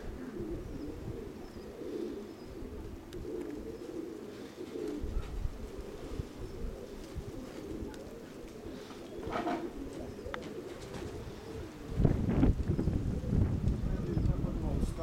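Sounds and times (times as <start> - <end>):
wind buffeting microphone: 0.0 - 1.6, 5.0 - 10.2, 10.8 - 15.0
pigeons cooing: 0.0 - 15.0.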